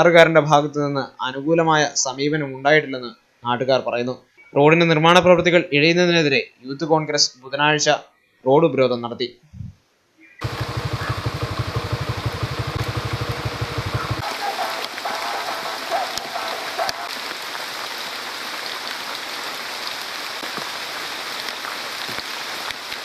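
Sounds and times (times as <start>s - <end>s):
fast low pulsing sound: 10.4s - 14.5s
steady rain falling: 10.4s - 23.0s.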